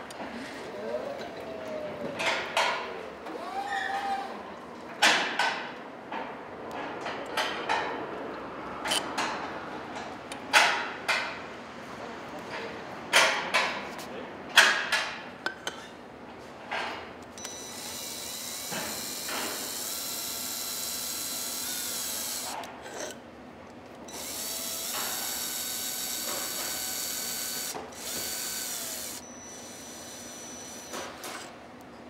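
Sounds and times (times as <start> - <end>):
cordless drill whining: 17.4 - 22.6, 24.1 - 31.5.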